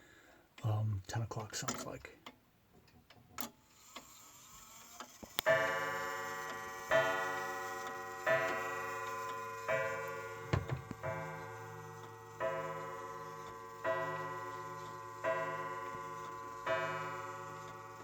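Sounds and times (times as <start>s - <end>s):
clock movement clicks: 1.4s - 4.2s
wall clock striking gong: 5.5s - 18.0s.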